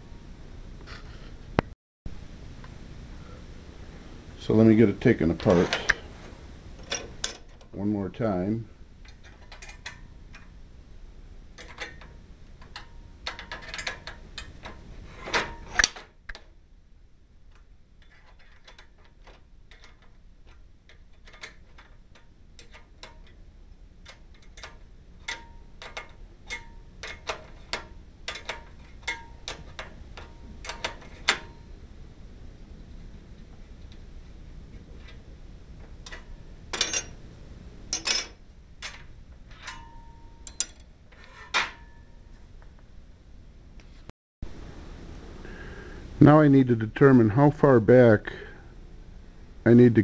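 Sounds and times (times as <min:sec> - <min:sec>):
metal clatter: 0:36.0 - 0:37.2
metallic clicks of hand tools: 0:39.6 - 0:41.6.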